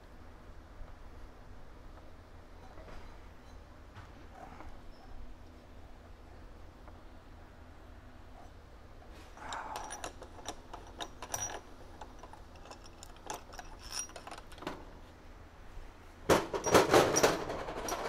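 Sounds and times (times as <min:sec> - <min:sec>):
metal tools clicking and clinking: 0:09.4 - 0:14.8, 0:16.6 - 0:18.0.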